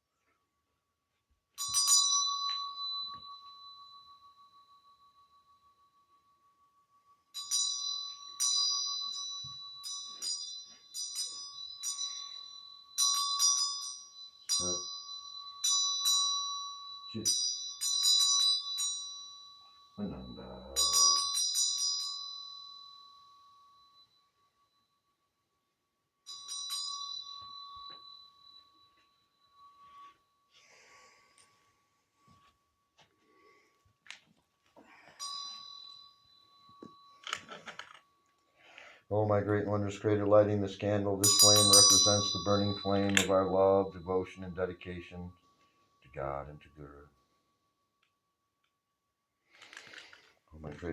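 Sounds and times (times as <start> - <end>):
steady low ringing tone: 1.5 - 33.8, 34.7 - 49.4
small high-pitched bell strikes: 1.6 - 25.3, 26.2 - 31.5, 34.8 - 38.5, 41.2 - 48.9.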